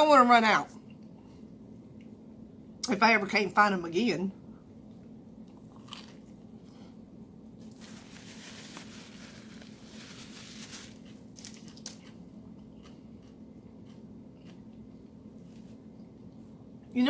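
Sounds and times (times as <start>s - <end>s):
chewing and mouth clicks: 5.4s - 6.3s, 11.4s - 15.2s
crunching or rustling: 7.6s - 13.0s.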